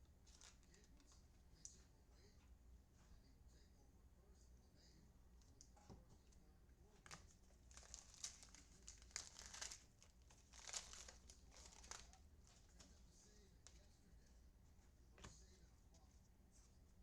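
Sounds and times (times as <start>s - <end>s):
card pack wrapper crinkling and tearing: 0.3s - 0.9s, 7.1s - 12.8s.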